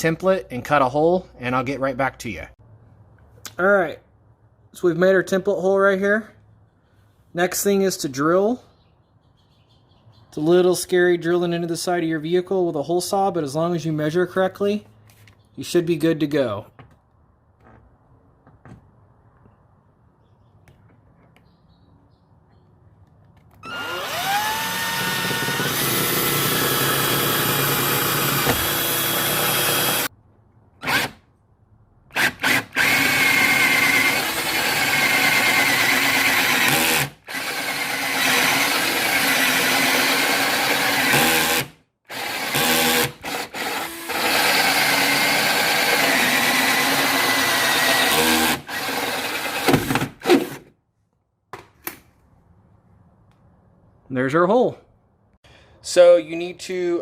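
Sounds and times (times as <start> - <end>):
power drill with hole saw cutting: 23.6 - 30.1, 30.8 - 31.2, 32.1 - 50.7.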